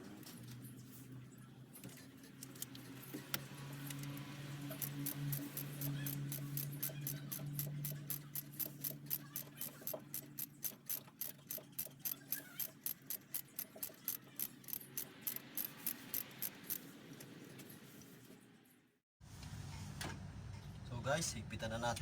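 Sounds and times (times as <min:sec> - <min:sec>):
ratchet wrench clicking: 0:03.8 - 0:17.3.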